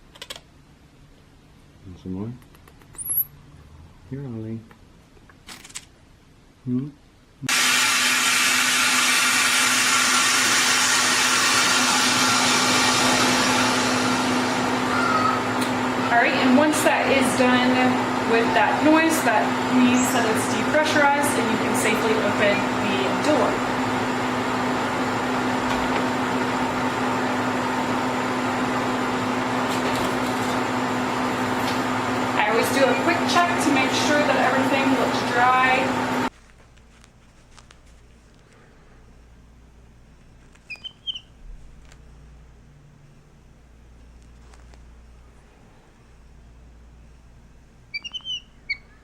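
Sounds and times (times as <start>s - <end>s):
steady hum: 11.4s - 49.0s.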